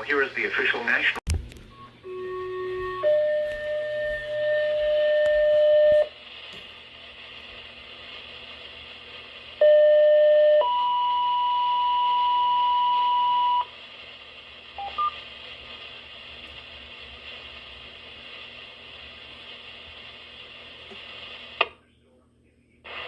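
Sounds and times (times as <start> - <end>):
radio hiss: 0.0 - 1.2, 3.6 - 9.7, 12.0 - 23.0.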